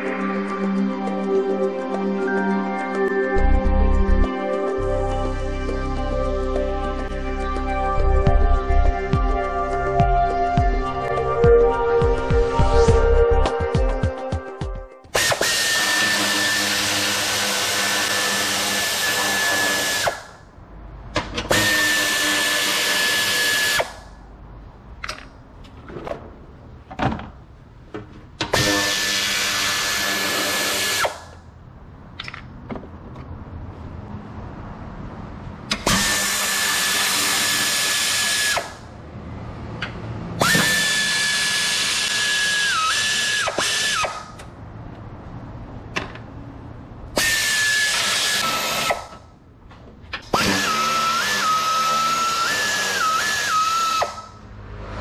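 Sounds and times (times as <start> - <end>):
power drill whining: 15.2 - 20.3, 35.7 - 38.8, 40.4 - 44.2, 47.2 - 49.1, 50.3 - 54.3
tools clicking and clinking: 25.0 - 26.2.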